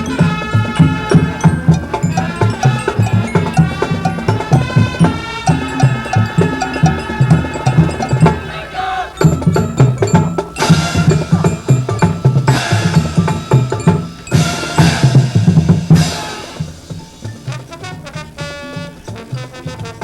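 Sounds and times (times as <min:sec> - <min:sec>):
horns holding sustained chords: 0:00.0 - 0:09.5, 0:10.6 - 0:20.0
bass drums and wood block: 0:00.0 - 0:20.0
marching band playing latin jazz: 0:00.0 - 0:20.0
cymbal crashes: 0:10.5 - 0:17.7.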